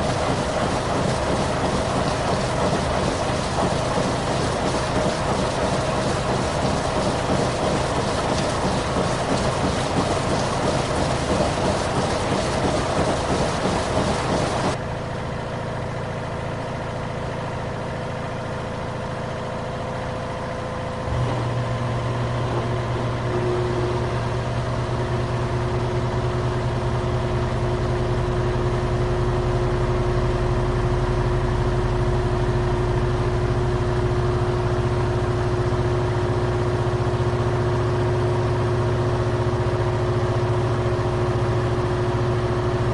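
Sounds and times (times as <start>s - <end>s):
washing machine churning: 0.0s - 14.8s
washing machine motor hum: 0.0s - 14.8s.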